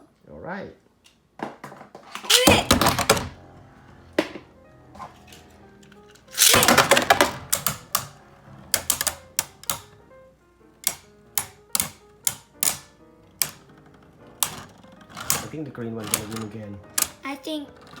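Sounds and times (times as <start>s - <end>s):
spinning tops clattering: 6.2s - 8.2s
spinning tops clicking together: 6.3s - 8.2s.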